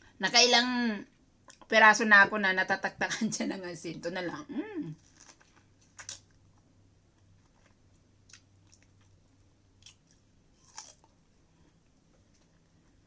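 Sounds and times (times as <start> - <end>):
person chewing strawberries: 5.0 - 6.4, 7.3 - 13.0.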